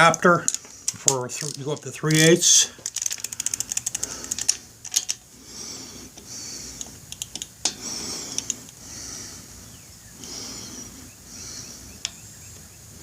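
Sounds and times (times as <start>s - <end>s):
metallic clicks of hand tools: 2.8s - 5.2s, 6.8s - 8.8s.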